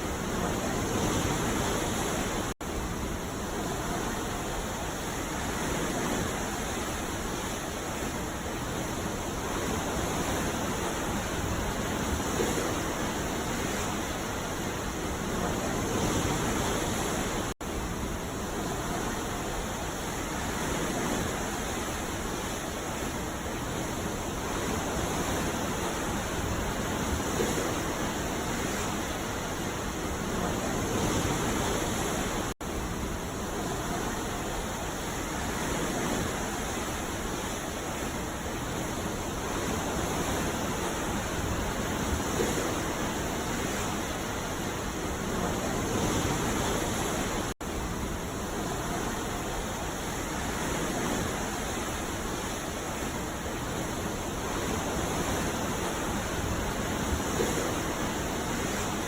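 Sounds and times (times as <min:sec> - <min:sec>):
ocean waves breaking on beach: 0:00.0 - 0:59.0.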